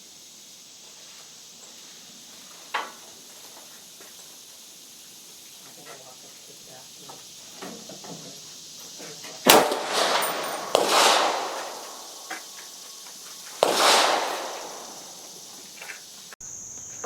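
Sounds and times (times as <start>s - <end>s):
rifle shots echoing: 9.5s - 12.9s, 13.5s - 15.8s.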